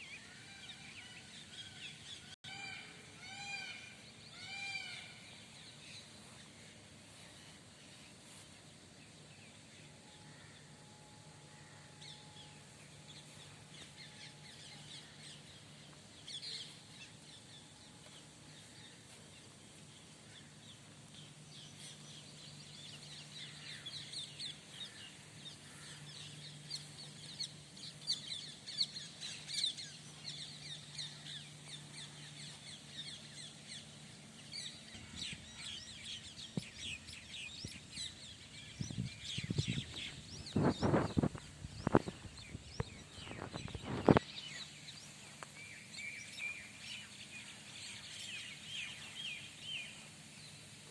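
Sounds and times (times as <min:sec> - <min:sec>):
faint low hum: 0:00.0 - 0:50.9
small birds chirping: 0:12.9 - 0:50.9.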